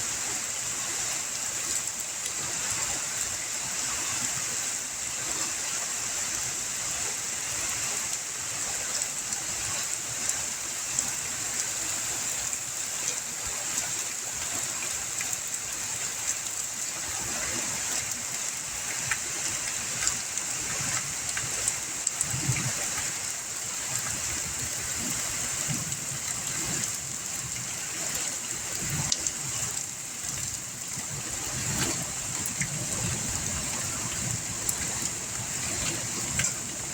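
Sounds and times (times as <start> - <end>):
steady rain hiss: 0.0 - 36.9
raindrops ticking: 18.0 - 36.9.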